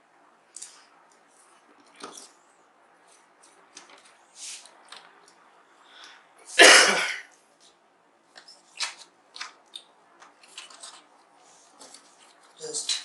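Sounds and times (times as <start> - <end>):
person coughing: 6.6 - 7.3.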